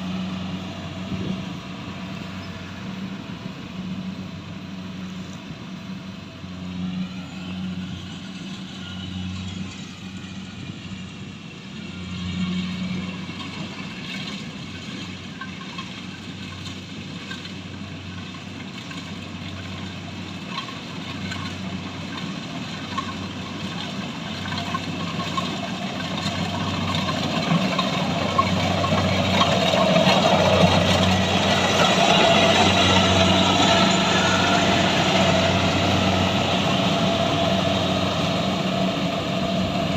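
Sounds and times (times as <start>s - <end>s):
harvester engine hum: 0.0s - 39.9s
high mechanical whine: 0.0s - 39.9s.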